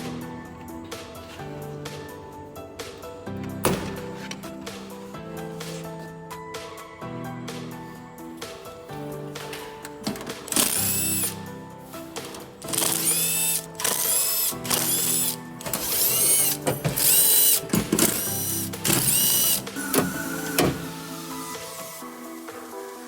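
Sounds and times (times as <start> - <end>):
background music: 0.0 - 23.0
cordless power tool whining: 10.2 - 11.5, 12.2 - 21.9.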